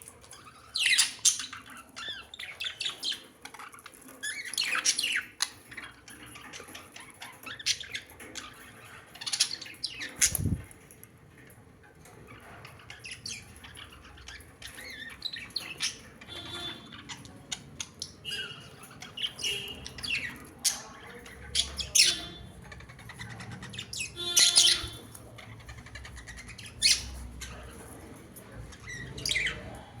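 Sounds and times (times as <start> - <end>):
birds squawking and chirping: 0.0 - 30.0.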